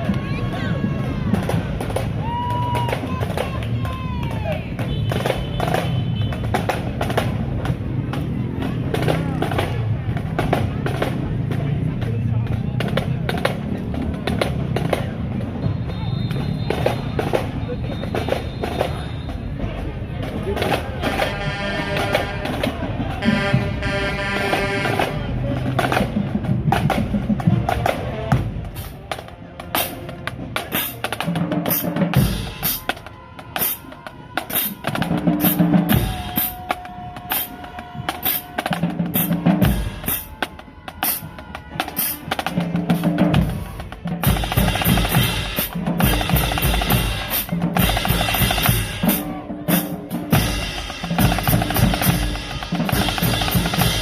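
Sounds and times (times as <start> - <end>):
bass drums: 0.0 - 54.0
snare drums: 0.0 - 54.0
horns playing chords: 21.0 - 25.7
cymbals: 27.6 - 54.0.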